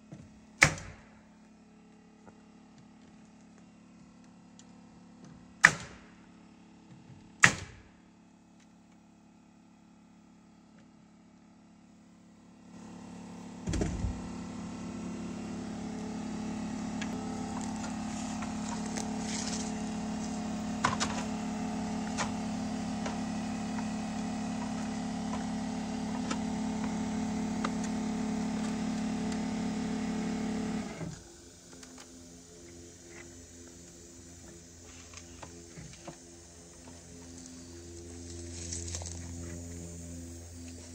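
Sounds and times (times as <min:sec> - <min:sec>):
motor humming: 0:11.9 - 0:40.9.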